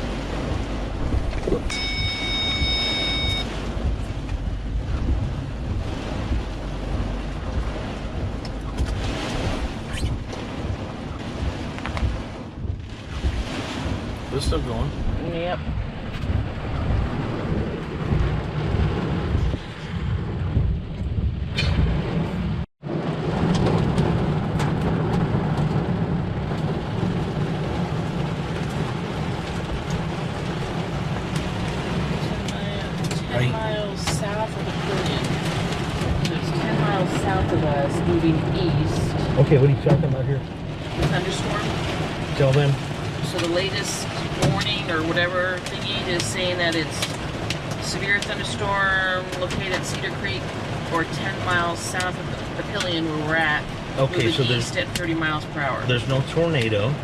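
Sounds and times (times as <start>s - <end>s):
steady low rumble: 0.0s - 57.0s
storm wind and rain on vehicle: 0.0s - 57.0s
high electronic tone: 1.7s - 3.5s.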